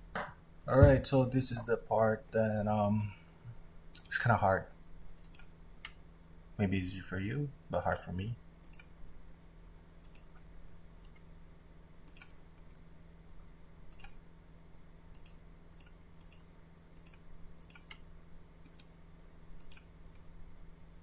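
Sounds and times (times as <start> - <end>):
faint low hum: 0.0 - 21.0
sharp high-pitched clicks: 5.2 - 6.0, 7.8 - 8.9, 10.0 - 10.4, 12.0 - 12.4, 13.9 - 14.2, 15.1 - 18.0, 18.6 - 19.0, 19.6 - 19.9.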